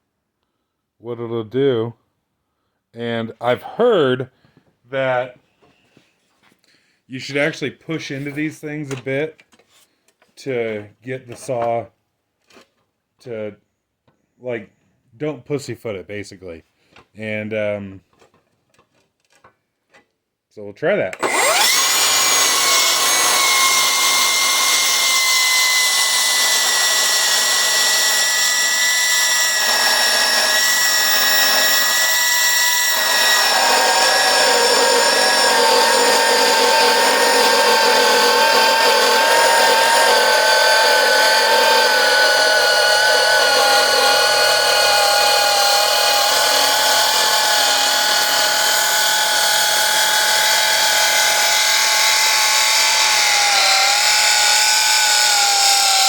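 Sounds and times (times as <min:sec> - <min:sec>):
circular saw whining through metal: 0:21.2 - 0:56.0
harsh grinding rasp: 0:21.2 - 0:56.0.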